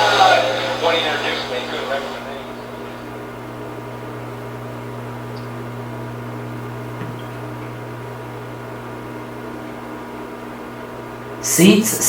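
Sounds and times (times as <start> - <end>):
electrical hum: 0.0 - 12.0
faint click: 5.2 - 5.6.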